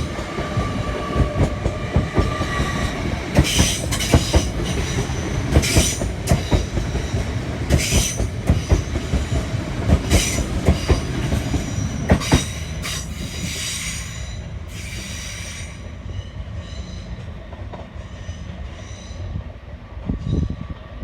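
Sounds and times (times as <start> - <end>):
train wheels squealing: 0.4 - 9.5, 10.1 - 19.5.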